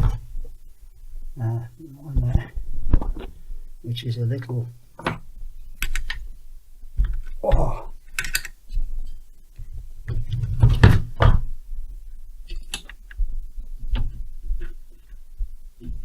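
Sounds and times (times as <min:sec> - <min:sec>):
heavy thumps: 0:00.0 - 0:05.6, 0:06.2 - 0:08.0, 0:09.6 - 0:12.1.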